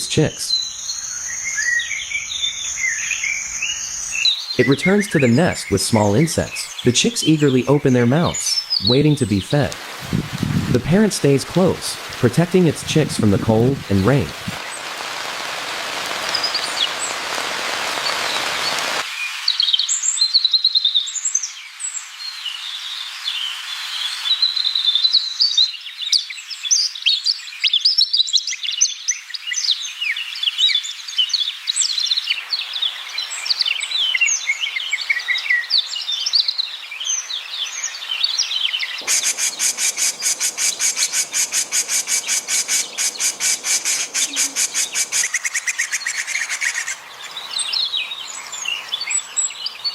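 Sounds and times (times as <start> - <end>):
rain hiss: 0.0 - 20.3, 32.4 - 36.0, 39.0 - 49.9
small birds chirping: 0.0 - 49.9.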